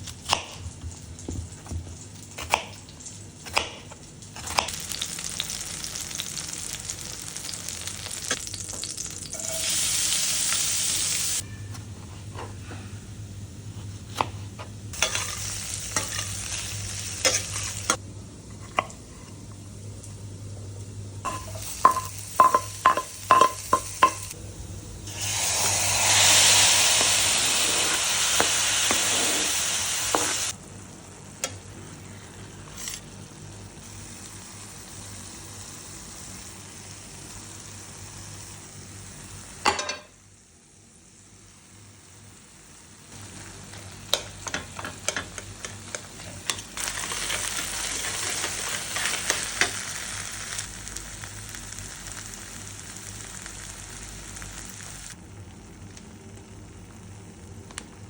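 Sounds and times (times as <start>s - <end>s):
food sizzling in hot oil: 4.3s - 11.4s, 14.9s - 18.0s, 21.2s - 24.4s, 25.1s - 30.6s, 32.6s - 40.2s, 41.0s - 55.2s.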